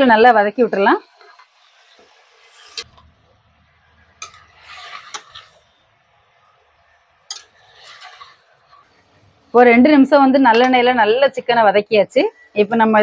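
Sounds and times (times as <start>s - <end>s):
light sizzling: 0.0s - 13.0s
spoon scraping a pot: 4.0s - 5.8s, 7.2s - 9.0s
spoon clinking against pot: 7.3s - 7.5s.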